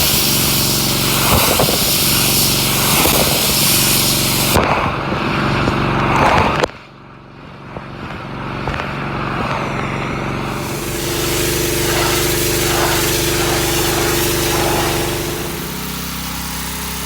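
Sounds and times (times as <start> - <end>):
pressure washer engine hum: 0.0 - 4.6, 8.5 - 17.0
spray hissing: 0.0 - 4.6, 10.5 - 17.0.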